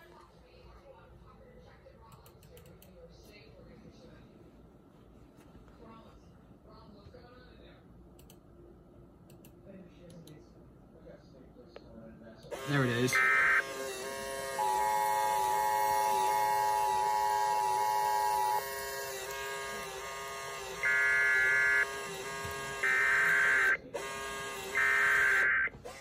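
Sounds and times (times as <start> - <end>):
steady buzz: 12.5 - 26.0
two-tone alert signal: 12.8 - 13.8, 14.4 - 25.7
warbling data tones: 13.0 - 13.7, 20.8 - 23.8, 24.7 - 25.7.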